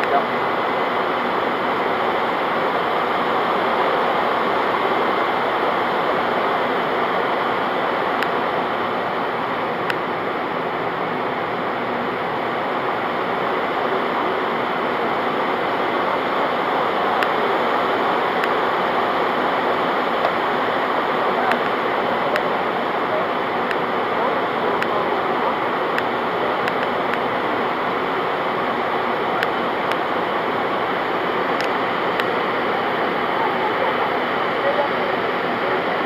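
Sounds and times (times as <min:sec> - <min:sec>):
faint clicks: 0:21.5 - 0:22.5, 0:26.0 - 0:27.3.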